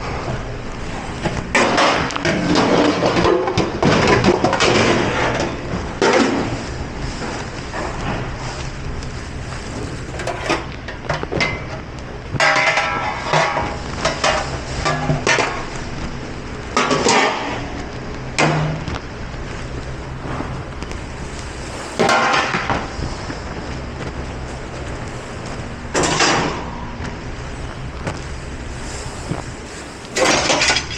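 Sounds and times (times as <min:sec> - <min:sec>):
low machine hum: 0:00.0 - 0:30.9
dishes and pots clattering: 0:09.7 - 0:10.7.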